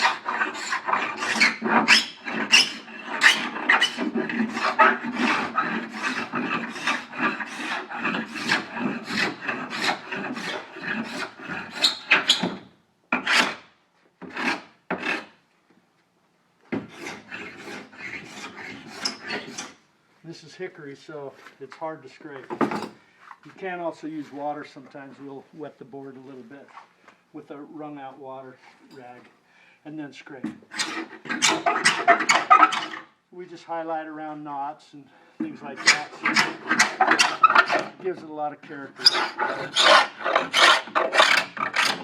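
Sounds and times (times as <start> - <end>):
hand scraper shaving wood: 0.0 - 12.6, 16.8 - 19.7, 30.6 - 33.0, 35.7 - 38.1, 38.7 - 42.0.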